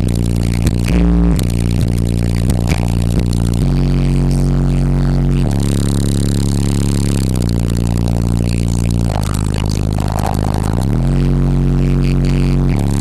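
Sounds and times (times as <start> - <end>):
rattle: 0.0 - 3.6
subwoofer playing bass-heavy music: 0.0 - 13.0.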